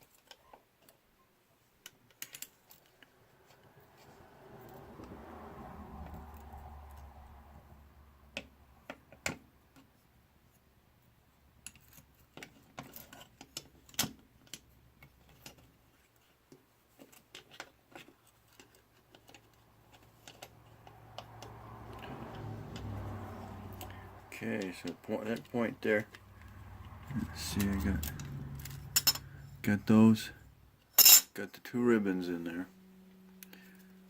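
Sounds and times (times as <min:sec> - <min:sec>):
small parts clicking and tapping: 0:11.6 - 0:22.9.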